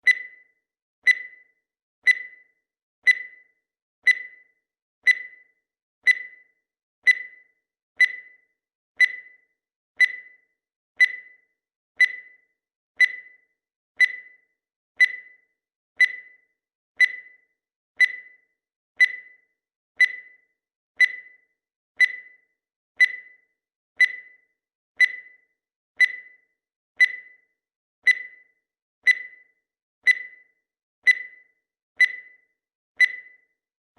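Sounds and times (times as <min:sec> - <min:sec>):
short high-pitched beeps: 0:00.0 - 0:05.5, 0:06.1 - 0:06.5, 0:07.1 - 0:10.4, 0:11.0 - 0:13.4, 0:14.0 - 0:14.4, 0:15.0 - 0:15.4, 0:16.0 - 0:18.4, 0:19.0 - 0:20.4, 0:22.0 - 0:22.4, 0:24.0 - 0:24.4, 0:25.0 - 0:25.4, 0:26.0 - 0:26.4, 0:27.0 - 0:27.4, 0:28.0 - 0:33.6.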